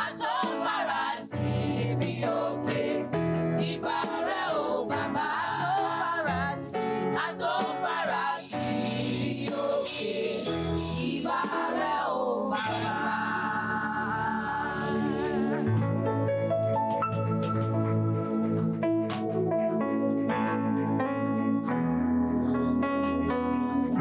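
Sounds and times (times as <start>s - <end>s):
women's choir singing gospel: 0.0s - 16.1s.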